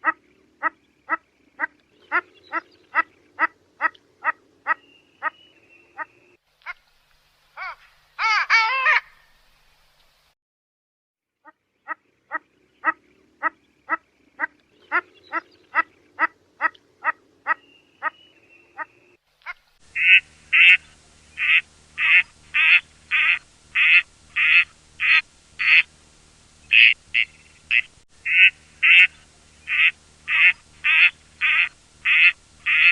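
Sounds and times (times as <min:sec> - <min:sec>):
duck quacking loudly: 0:11.9 - 0:18.2, 0:19.5 - 0:20.8, 0:21.4 - 0:25.9, 0:26.7 - 0:32.9.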